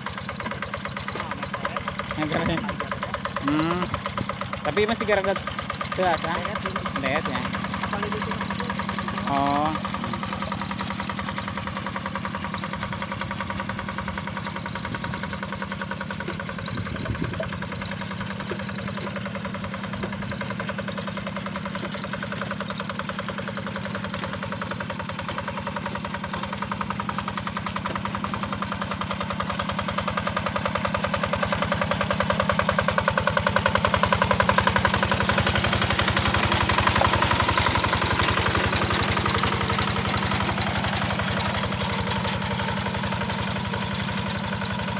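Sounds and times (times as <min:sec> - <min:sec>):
diesel tractor engine running: 0:00.0 - 0:44.9.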